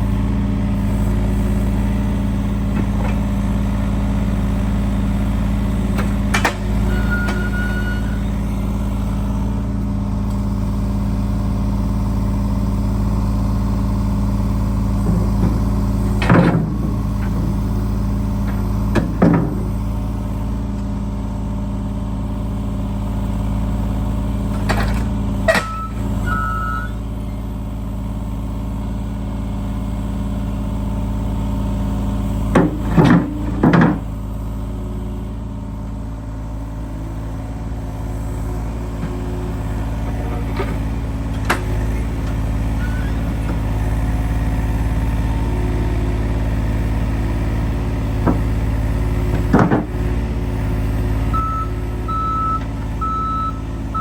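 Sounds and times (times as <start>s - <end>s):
diesel engine running: 0.0s - 54.0s
metal clanks and knocks: 15.0s - 17.8s, 18.4s - 19.8s, 32.5s - 34.1s, 49.2s - 50.0s.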